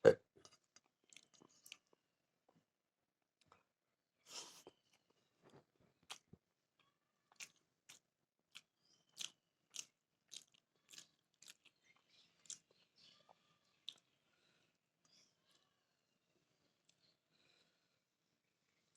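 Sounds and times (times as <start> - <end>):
person chewing food: 0.0 - 2.0, 4.3 - 6.4, 7.3 - 14.1.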